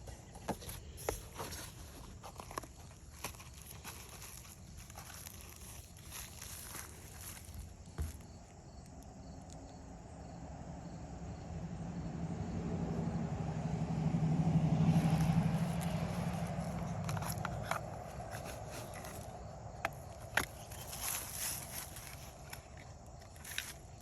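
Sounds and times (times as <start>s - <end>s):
passing motor vehicle: 9.0s - 24.0s.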